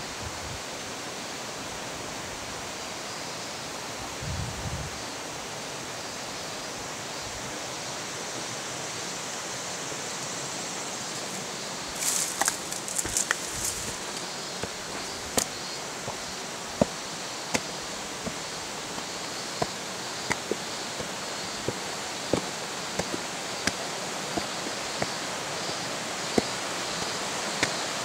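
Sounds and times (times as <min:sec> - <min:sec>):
river rushing: 0:05.0 - 0:28.0
sharp crackles: 0:12.0 - 0:14.3.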